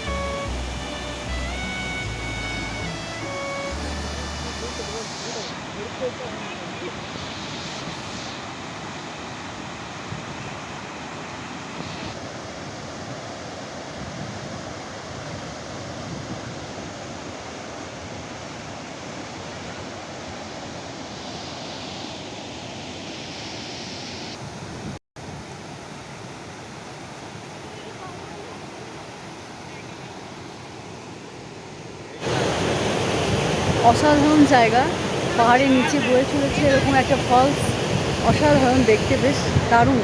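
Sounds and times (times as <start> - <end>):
waterfall rushing: 0.0 - 24.4, 25.4 - 40.0.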